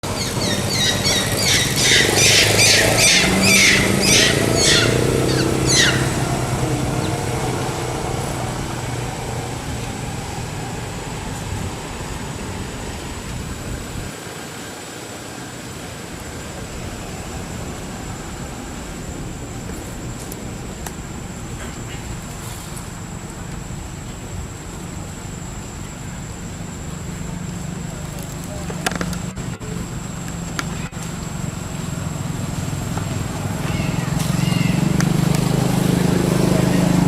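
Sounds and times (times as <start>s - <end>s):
high-pitched squealing calls: 0.0s - 8.2s, 33.5s - 35.0s
vehicle engine hum: 0.0s - 37.0s.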